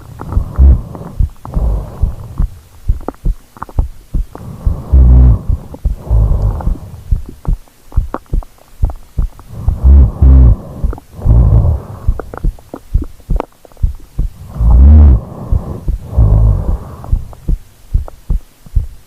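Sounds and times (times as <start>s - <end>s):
low snore: 0.0s - 2.6s, 4.4s - 7.1s, 9.5s - 12.4s, 14.4s - 17.4s
heartbeat low thuds: 0.0s - 19.0s.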